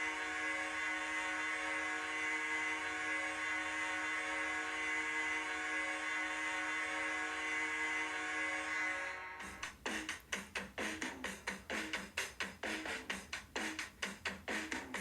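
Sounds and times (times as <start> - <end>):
goal horn blast: 0.0 - 9.7.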